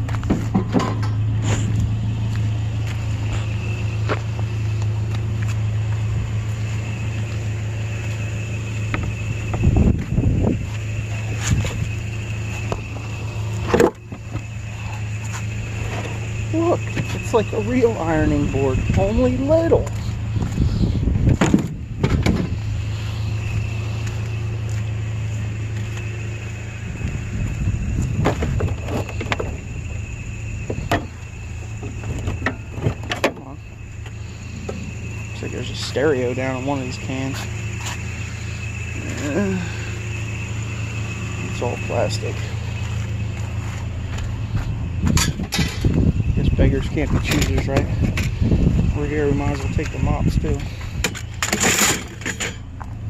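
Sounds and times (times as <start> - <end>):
vehicle engine and road noise: 0.0 - 53.0
faint high whine: 0.6 - 52.6.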